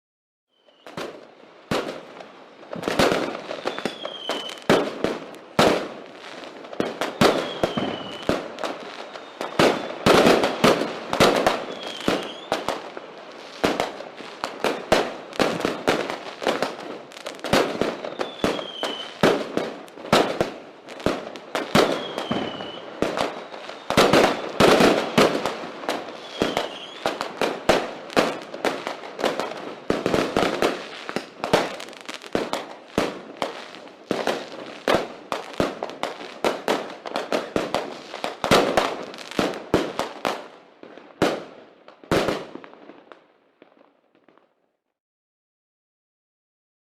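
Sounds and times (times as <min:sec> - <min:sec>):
falling firework whistle: 0:00.5 - 0:01.2, 0:02.8 - 0:04.9, 0:06.8 - 0:13.8, 0:14.6 - 0:16.8, 0:17.4 - 0:20.5, 0:21.6 - 0:28.4
fireworks bangs and crackling: 0:00.6 - 0:44.6.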